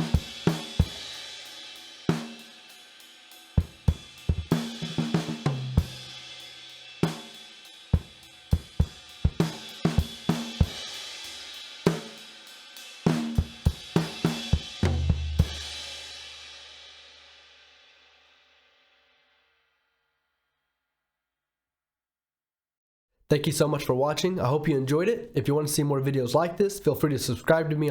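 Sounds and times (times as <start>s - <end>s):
drum kit playing: 0.0s - 16.8s
crash cymbal: 0.0s - 19.2s.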